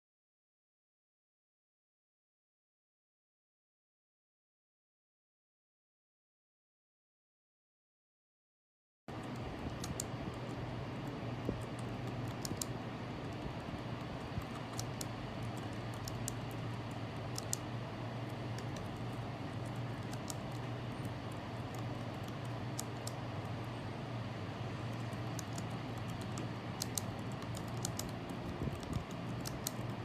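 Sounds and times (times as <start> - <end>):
low background hum: 9.1 - 30.0
keyboard key clicks: 9.2 - 17.7, 18.3 - 23.3, 24.9 - 30.0.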